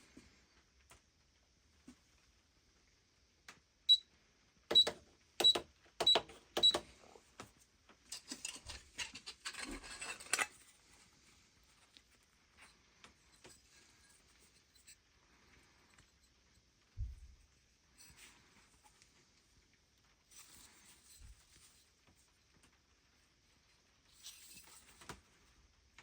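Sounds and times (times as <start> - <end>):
rustling and scraping: 7.1 - 25.6.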